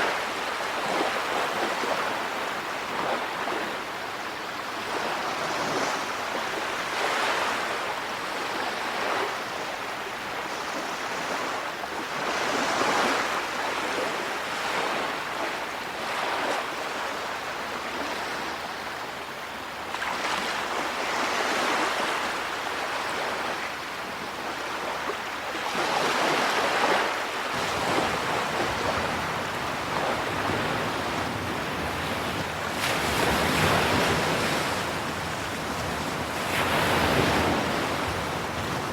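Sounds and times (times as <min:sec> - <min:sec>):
waves washing onto shore: 0:00.0 - 0:38.9
wind rumbling on microphone: 0:27.5 - 0:38.9.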